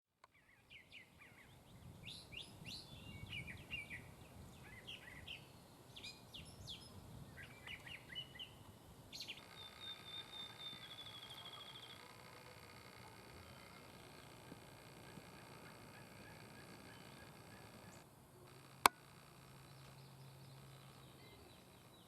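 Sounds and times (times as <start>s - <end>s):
songbirds chirping and singing: 0.3s - 18.1s, 19.6s - 22.0s
low outdoor rumble: 6.4s - 22.0s.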